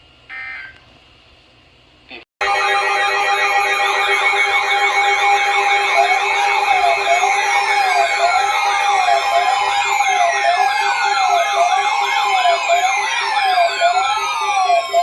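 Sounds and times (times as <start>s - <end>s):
steady alert tones: 2.4s - 15.0s
wailing electronic siren: 2.4s - 15.0s.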